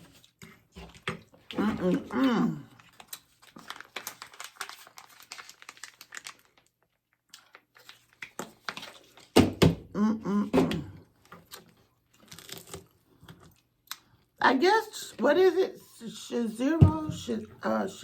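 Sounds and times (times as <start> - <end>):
crisp tostadas crunching: 0.1 - 9.1.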